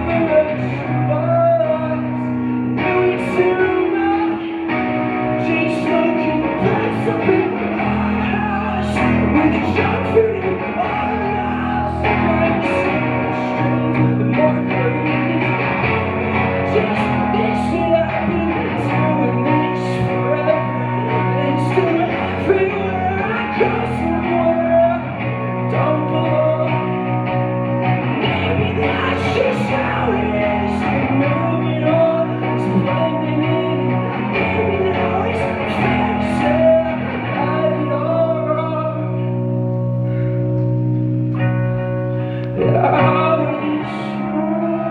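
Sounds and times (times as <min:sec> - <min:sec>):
live rock band playing: 0:00.0 - 0:38.3.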